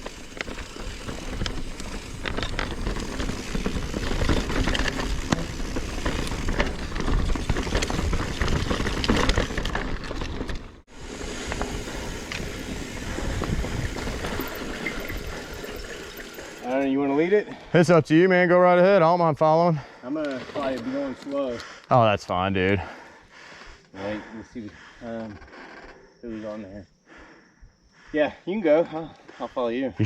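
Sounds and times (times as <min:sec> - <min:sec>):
bike frame rattling: 0:00.0 - 0:16.8
bike tyres rolling over dirt and rocks: 0:00.0 - 0:16.8, 0:20.2 - 0:21.8.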